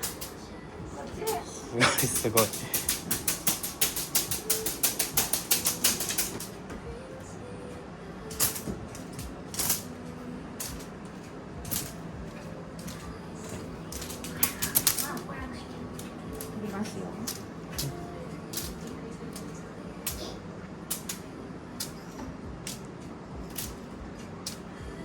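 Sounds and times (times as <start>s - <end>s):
rapid light clicking: 2.0s - 6.5s.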